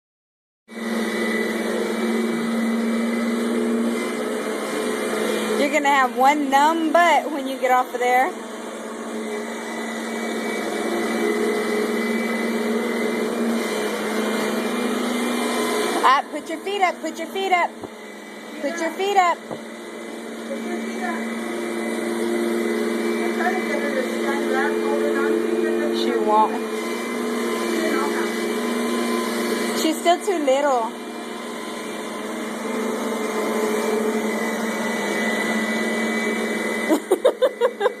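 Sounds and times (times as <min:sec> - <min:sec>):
vacuum cleaner motor running: 0:00.7 - 0:38.0
person laughing: 0:36.9 - 0:38.0.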